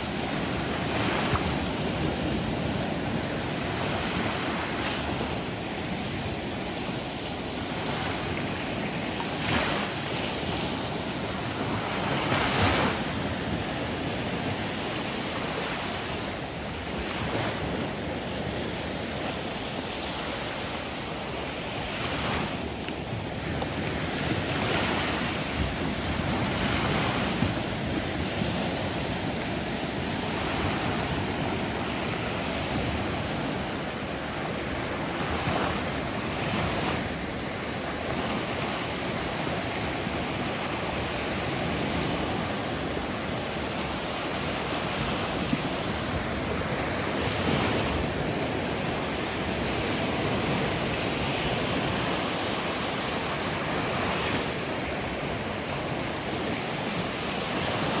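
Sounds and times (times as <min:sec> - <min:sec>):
sea waves washing in: 0:00.0 - 0:58.0
wind on microphone: 0:00.0 - 0:58.0.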